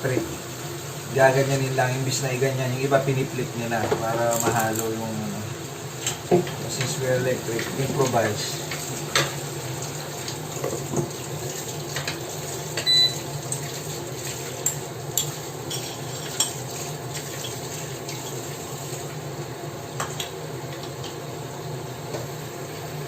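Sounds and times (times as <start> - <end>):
metal utensil scraping a pan: 15.7 - 16.6.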